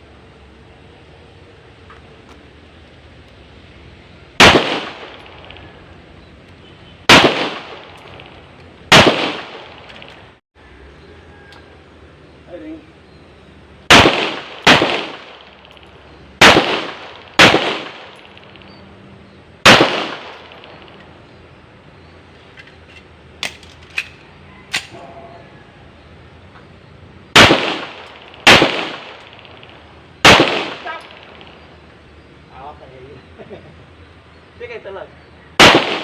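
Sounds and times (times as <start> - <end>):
pistol shots: 4.4 - 5.7, 7.0 - 10.2, 13.9 - 18.8, 19.6 - 21.0, 27.3 - 31.7, 35.6 - 36.0.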